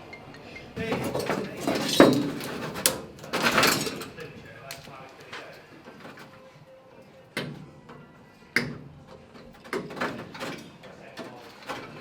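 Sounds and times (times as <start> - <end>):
knocks and clunks: 0.8 - 4.8.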